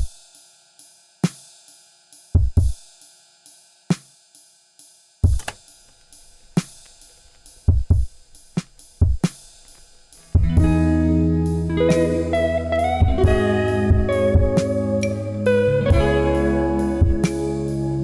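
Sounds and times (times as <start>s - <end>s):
hi-hat ticking: 0.0s - 18.0s
kick drum hits: 5.2s - 5.6s, 7.7s - 8.1s, 13.0s - 14.6s.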